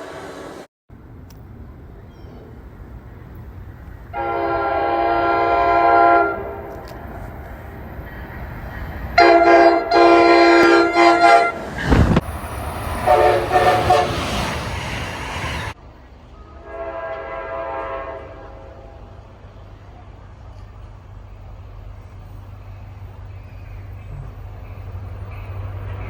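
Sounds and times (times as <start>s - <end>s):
train noise: 0.0s - 26.0s
train horn blasts: 4.1s - 7.0s, 9.2s - 11.7s, 13.0s - 14.4s, 16.6s - 19.3s.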